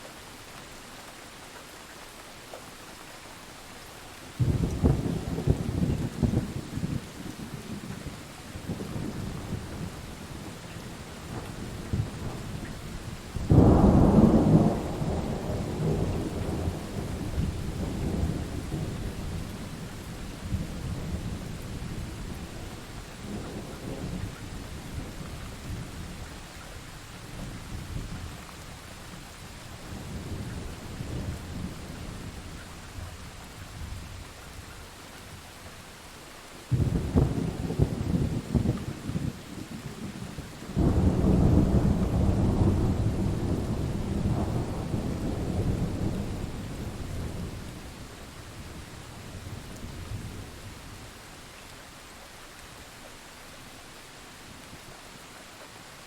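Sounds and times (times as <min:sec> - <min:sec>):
steady rain: 0:00.0 - 0:56.0
loud thunderclap: 0:04.4 - 0:07.0, 0:13.4 - 0:19.0, 0:36.7 - 0:39.3, 0:40.7 - 0:47.5
low rolling thunder: 0:04.4 - 0:26.4, 0:27.0 - 0:34.2, 0:36.7 - 0:50.9.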